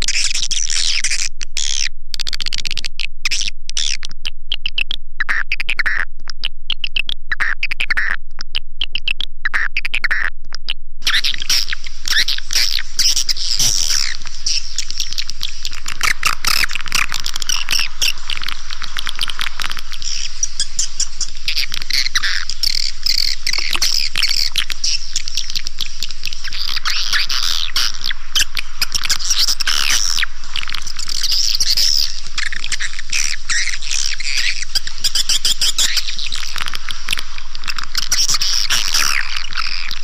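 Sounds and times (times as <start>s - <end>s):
swiftlets chirping and clicking: 11.0s - 40.0s.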